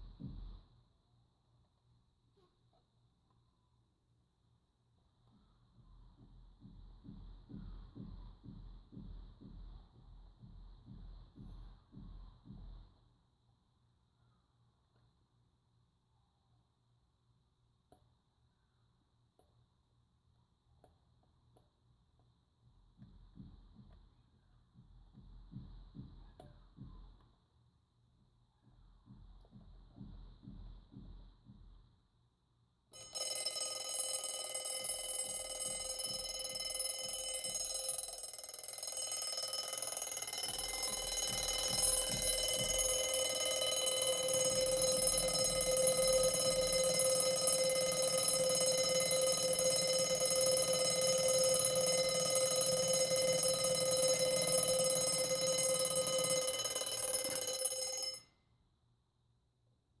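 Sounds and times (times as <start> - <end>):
alarm clock bell ringing: 33.0 - 58.2.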